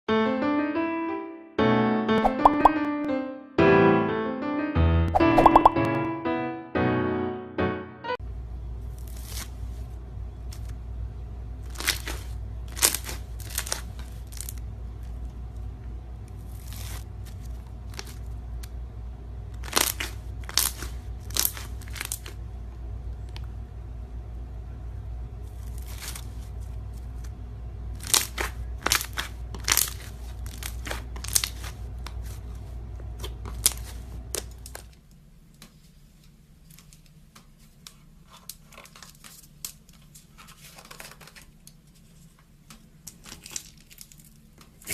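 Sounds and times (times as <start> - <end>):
steady low hum: 8.2 - 40.8
crinkling and crunching handling: 8.8 - 10.8, 11.6 - 18.8, 19.5 - 22.4, 25.4 - 44.9.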